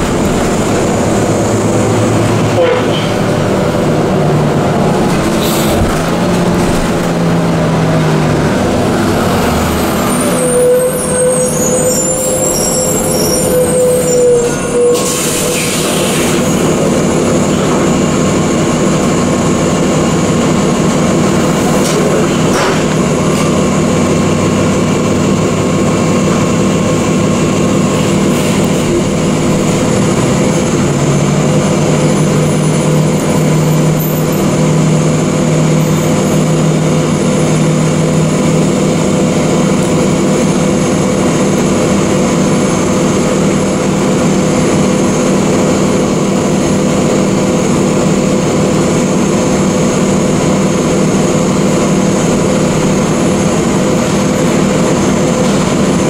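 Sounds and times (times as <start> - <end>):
subway train rumbling: 0.0 - 56.0.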